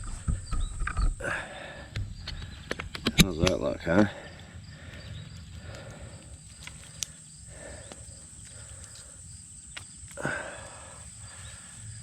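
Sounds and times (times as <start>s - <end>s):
insects droning: 0.0s - 12.0s
campfire popping and crackling: 4.2s - 11.9s.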